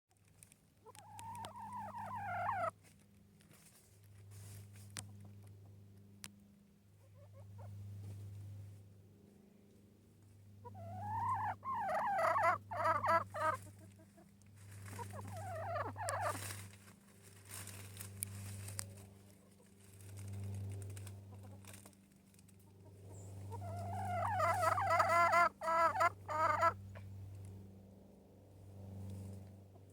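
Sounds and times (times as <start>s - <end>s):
low steady hum: 0.2s - 29.9s
hen calling in wavering trills: 1.0s - 2.7s, 10.6s - 13.6s, 14.9s - 16.5s, 23.1s - 26.8s.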